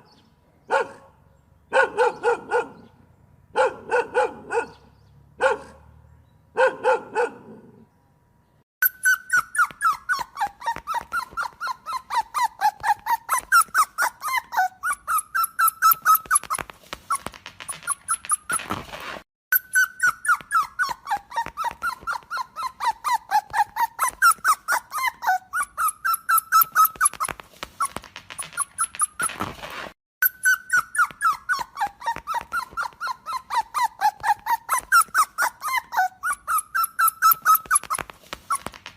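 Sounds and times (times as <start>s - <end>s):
dog barking: 0.7s - 7.8s
dog yelping and whining: 8.8s - 38.9s.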